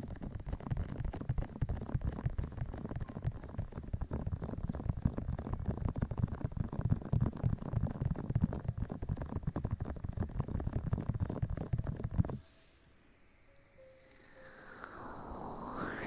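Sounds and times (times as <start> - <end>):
hands rubbing on microphone: 0.3 - 12.7.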